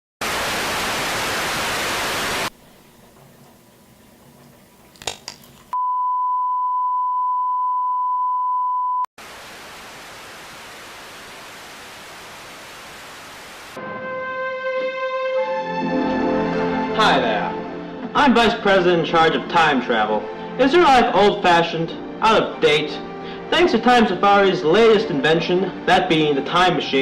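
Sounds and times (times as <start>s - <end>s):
static hiss: 0.2s - 4.0s, 9.2s - 13.8s.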